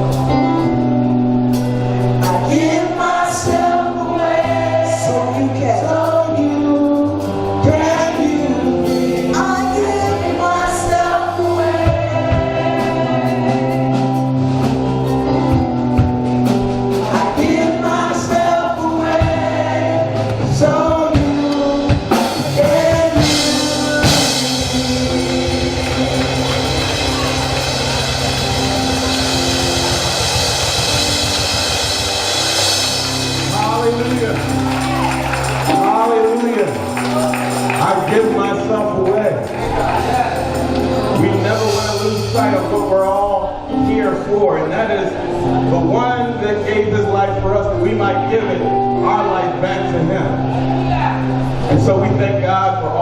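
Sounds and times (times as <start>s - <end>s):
gospel choir singing: 2.0s - 15.6s, 16.6s - 43.1s
high-pitched wash: 23.7s - 38.7s.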